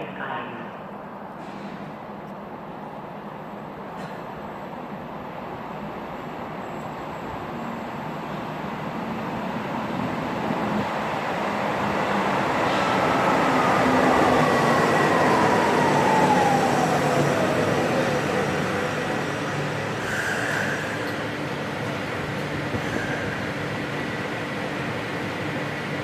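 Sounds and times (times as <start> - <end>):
light-rail train rumble: 0.0 - 26.0
falling whine: 12.6 - 21.0.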